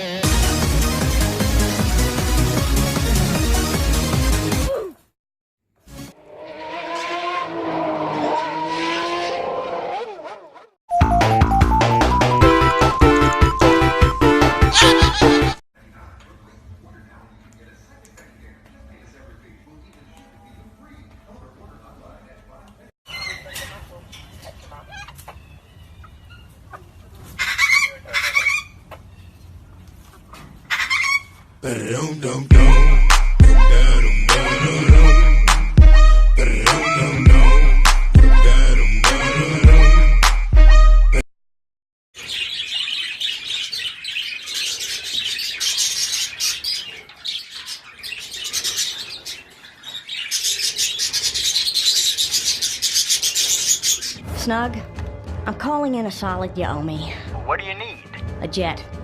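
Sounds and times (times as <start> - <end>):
bird squawking: 14.6 - 15.6, 23.1 - 29.4, 42.2 - 54.2
parrots chirping and chattering: 14.7 - 15.6, 23.1 - 31.6, 42.2 - 54.2.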